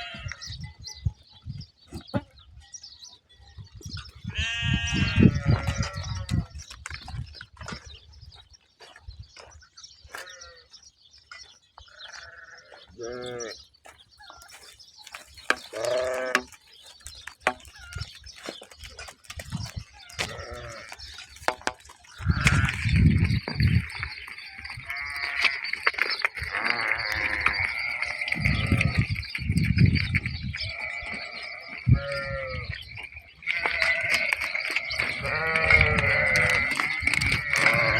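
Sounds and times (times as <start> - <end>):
sheep bleating: 0.0 - 0.5, 4.3 - 6.4, 11.9 - 13.6, 15.7 - 16.6, 20.1 - 21.2, 22.2 - 23.1, 24.8 - 25.6, 26.3 - 29.2, 30.6 - 32.8, 33.4 - 37.9.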